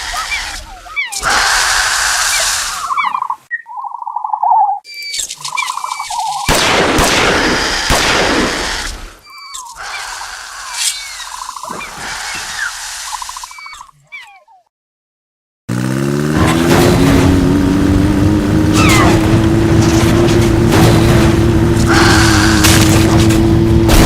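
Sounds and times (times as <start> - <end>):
creature hissing rasp: 0.0 - 3.0, 7.5 - 13.7, 21.9 - 22.9
creature gliding chirps: 0.0 - 6.5, 9.2 - 14.7
creature warbling hoots: 21.8 - 23.0.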